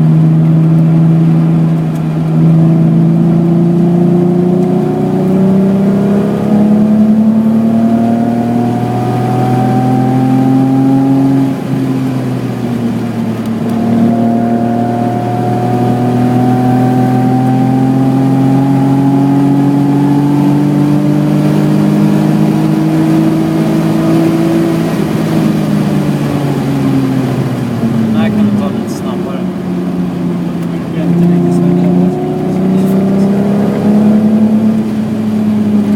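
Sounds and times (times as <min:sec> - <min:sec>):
car engine at full throttle: 0:00.0 - 0:35.9.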